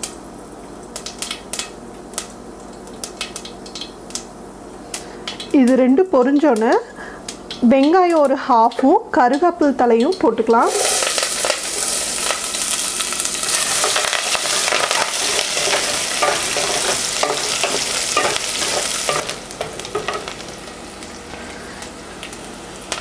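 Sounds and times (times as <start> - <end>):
onion sizzling in hot oil: 0.0 - 23.0
spatula scraping pan: 13.5 - 19.4.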